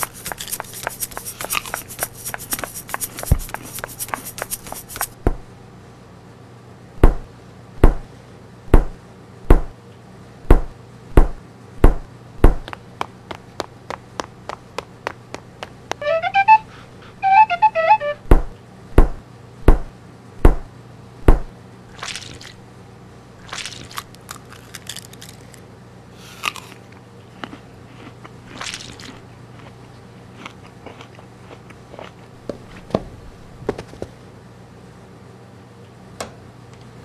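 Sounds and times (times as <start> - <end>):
crunching and rustling: 0.0 - 5.2, 23.4 - 25.6, 26.2 - 32.9
heavy thumps: 7.8 - 8.1, 8.7 - 9.7, 10.5 - 16.7, 18.2 - 21.5
melodic notes: 16.0 - 18.3.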